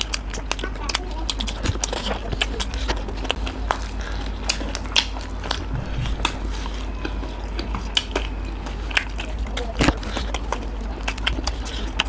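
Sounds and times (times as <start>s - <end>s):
chewing food: 0.0s - 7.1s, 7.7s - 12.0s
low steady hum: 3.3s - 8.6s.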